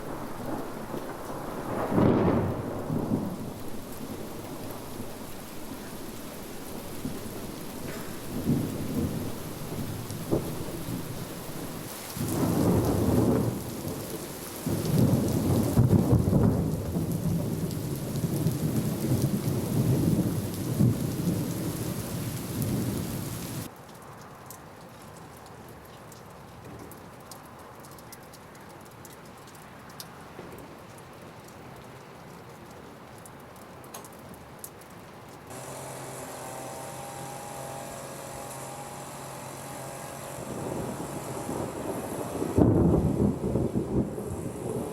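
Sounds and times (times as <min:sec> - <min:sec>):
thunder rumbling: 0:00.0 - 0:23.7, 0:39.0 - 0:44.9
raindrops ticking close by: 0:00.0 - 0:37.2, 0:38.0 - 0:44.9
steady rain: 0:00.0 - 0:44.9.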